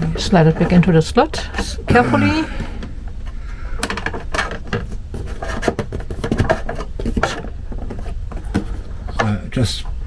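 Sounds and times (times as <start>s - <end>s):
steady low hum: 1.8s - 4.4s.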